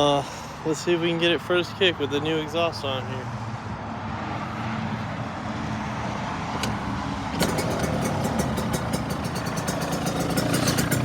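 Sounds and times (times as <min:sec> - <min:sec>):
motorcycle being kick-started: 0:06.6 - 0:11.0
two-stroke engine idling: 0:07.4 - 0:11.0.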